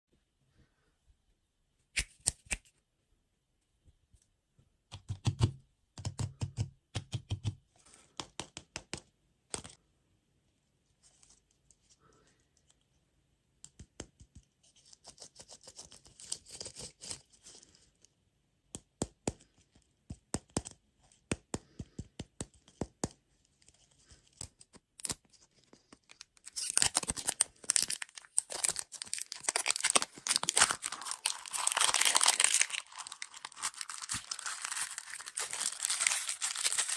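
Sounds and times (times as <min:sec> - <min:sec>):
plastic packaging crinkling: 0:26.0 - 0:36.9
packaging tearing: 0:26.1 - 0:36.9.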